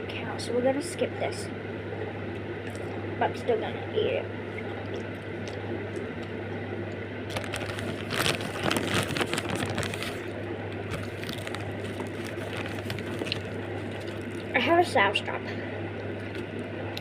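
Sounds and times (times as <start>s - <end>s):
low electrical hum: 0.0s - 17.0s
rustling: 7.3s - 10.3s, 10.9s - 14.5s.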